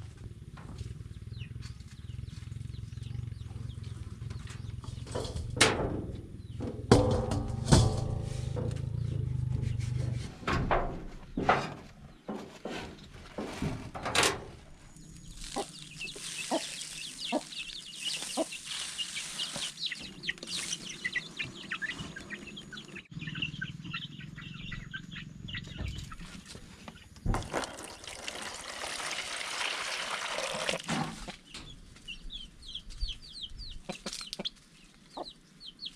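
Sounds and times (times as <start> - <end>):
sharp knocks: 5.2 - 8.9
chickens clucking: 15.2 - 27.2, 30.8 - 35.9.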